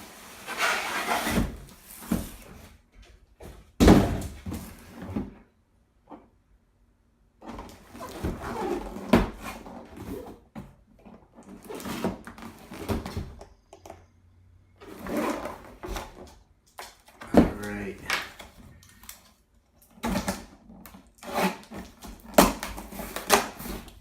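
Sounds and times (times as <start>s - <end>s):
packaging rustling and scraping: 0.0s - 2.8s, 11.0s - 13.4s, 14.8s - 17.2s, 18.3s - 24.0s.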